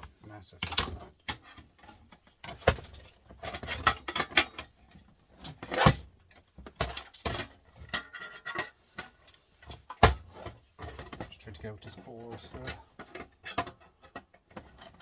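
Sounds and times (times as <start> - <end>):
printer parts clicking and rattling: 0.5 - 4.8.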